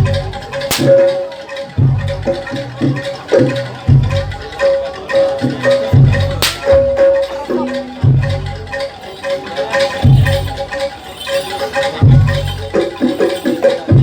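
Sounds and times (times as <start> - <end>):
sharp crack: 0.6 - 1.5, 6.3 - 7.4
metallic mallet note repeating: 0.6 - 1.8, 5.8 - 11.4.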